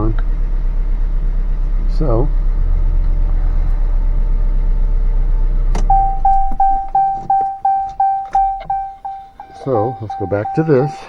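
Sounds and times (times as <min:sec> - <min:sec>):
car engine idling: 0:00.0 - 0:11.0
click: 0:05.7 - 0:08.8
dashboard warning chime beeping: 0:05.8 - 0:11.0.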